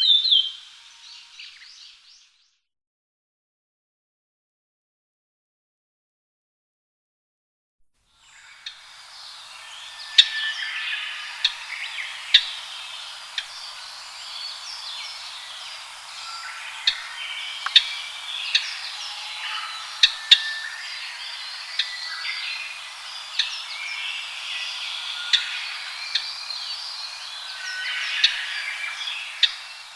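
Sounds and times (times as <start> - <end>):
birds calling and chattering: 8.2 - 29.9.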